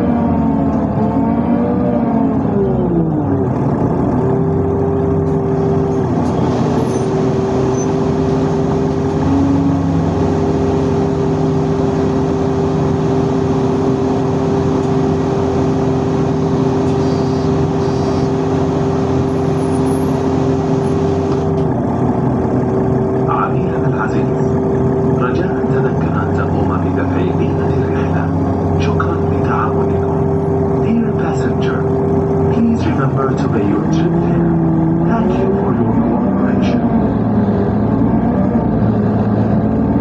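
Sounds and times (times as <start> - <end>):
multi-tone hum: 4.4 - 22.2, 23.0 - 40.0
metro train rumbling: 4.8 - 22.5.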